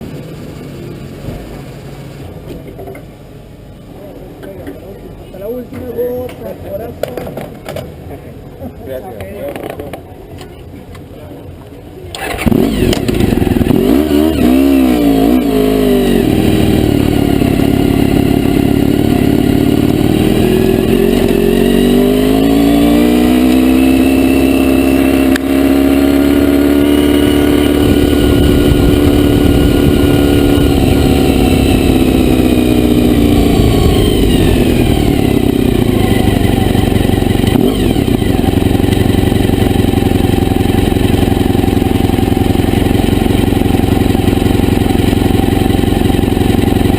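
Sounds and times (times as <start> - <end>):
motorcycle engine revving: 12.2 - 46.9.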